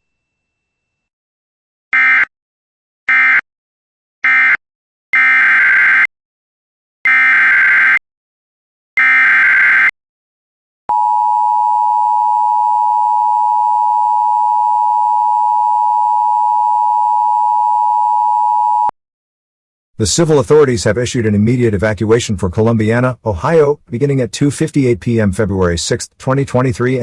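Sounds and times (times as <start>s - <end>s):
steady attention tone: 10.9s - 18.9s.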